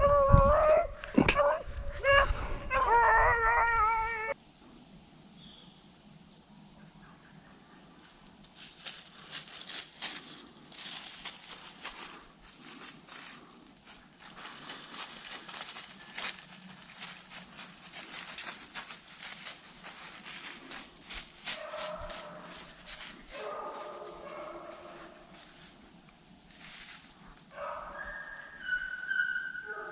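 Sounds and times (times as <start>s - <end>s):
rustling and crunching: 8.4s - 27.8s
hound baying: 21.5s - 25.3s.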